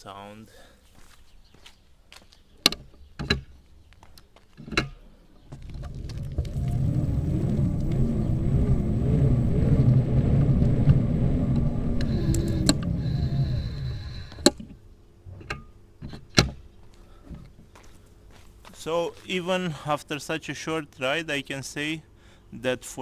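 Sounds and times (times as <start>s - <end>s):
scooter wheels rumbling: 5.4s - 14.8s
scooter motor whine: 5.5s - 14.8s.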